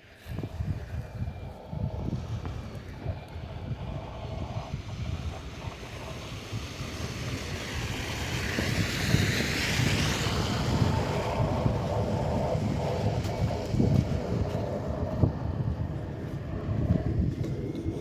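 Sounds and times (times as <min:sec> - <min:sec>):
wind buffeting microphone: 0:00.0 - 0:18.0
vehicle tyres hissing on wet street: 0:04.2 - 0:15.0.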